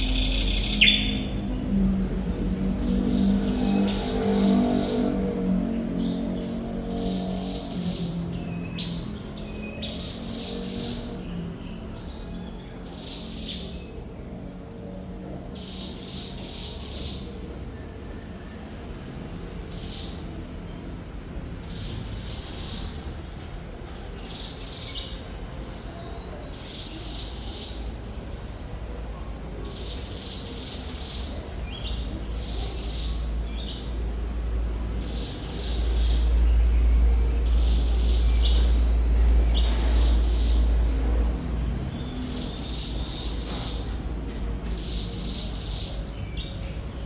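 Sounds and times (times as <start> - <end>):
thrush nightingale singing: 0.0 - 1.8.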